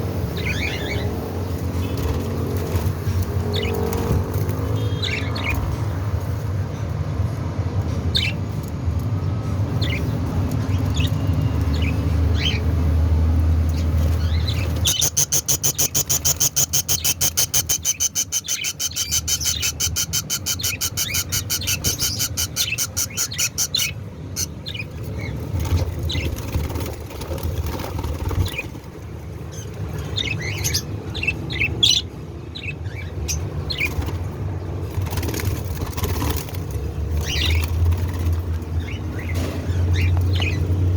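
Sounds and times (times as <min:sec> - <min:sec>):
budgerigars chirping: 0:13.7 - 0:26.8.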